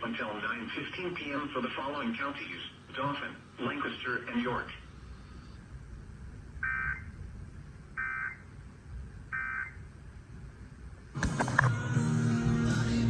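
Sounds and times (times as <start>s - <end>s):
music: 11.2s - 13.0s.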